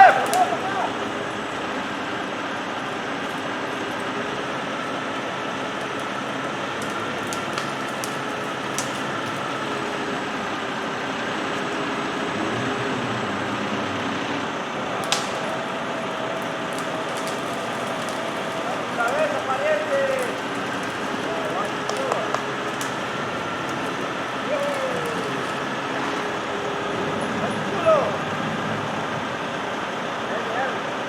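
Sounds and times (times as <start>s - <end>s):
steady mechanical noise: 0.0s - 31.0s.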